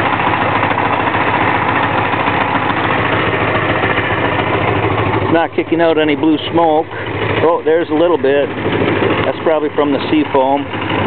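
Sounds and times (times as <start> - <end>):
motorcycle engine idling: 0.0 - 11.0.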